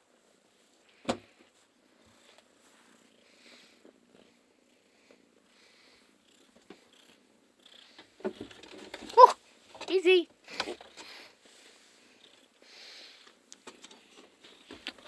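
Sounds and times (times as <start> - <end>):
cat purring: 1.6 - 8.9, 10.5 - 15.0.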